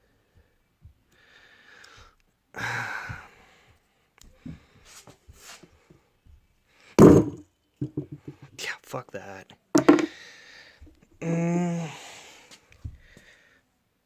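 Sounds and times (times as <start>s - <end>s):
quiet breaths: 0.0s - 7.0s, 10.1s - 14.0s
faint handling knocks: 7.0s - 8.5s, 9.8s - 10.1s
man sighing: 11.2s - 12.2s.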